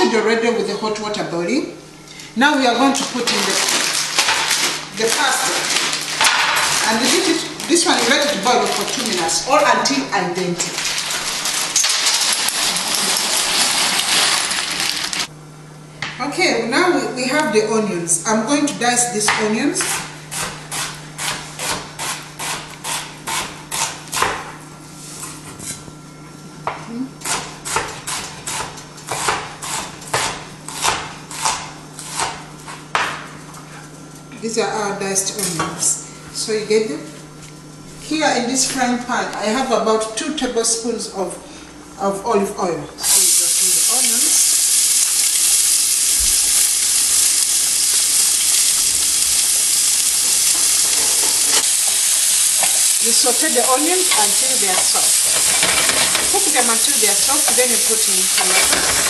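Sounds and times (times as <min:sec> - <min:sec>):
knife chopping on cutting board: 0:19.3 - 0:24.5, 0:27.2 - 0:33.2
onions sizzling in a frying pan: 0:43.0 - 0:59.0.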